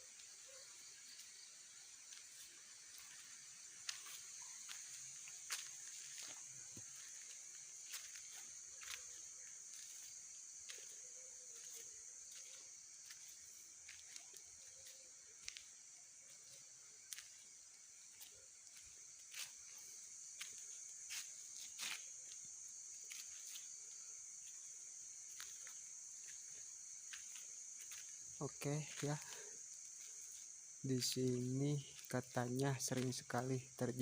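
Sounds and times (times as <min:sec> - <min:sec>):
insects chorus: 0:00.0 - 0:34.0.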